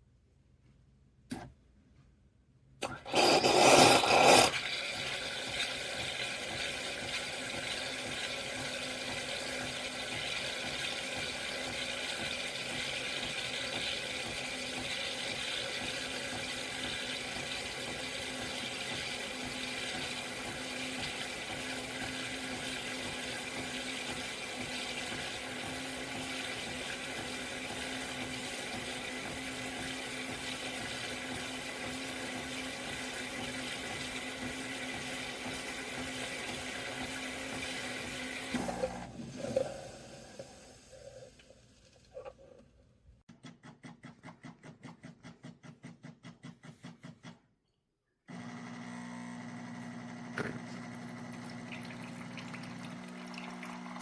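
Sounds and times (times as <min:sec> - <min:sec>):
espresso machine humming: 0:03.1 - 0:39.8, 0:48.3 - 0:54.0.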